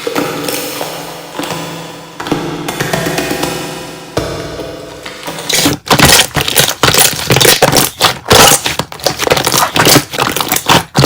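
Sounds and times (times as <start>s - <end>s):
slime squished by hand: 5.5s - 11.0s.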